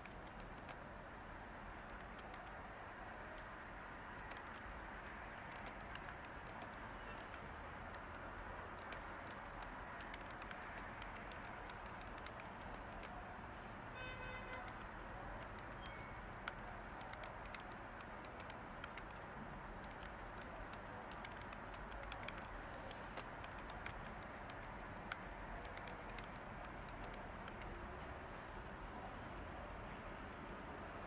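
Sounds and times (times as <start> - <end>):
keyboard keystrokes: 0.0 - 0.8, 1.8 - 2.5, 4.2 - 13.2, 14.5 - 27.8
white-noise hiss: 0.0 - 14.0, 14.8 - 31.0.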